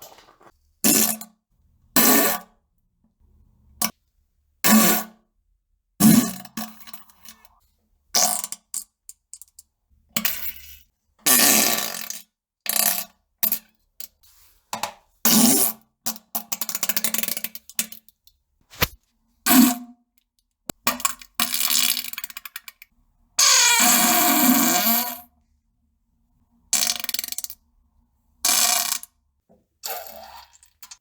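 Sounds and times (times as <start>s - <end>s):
fart sounds: 18.7s - 19.0s, 29.8s - 30.7s.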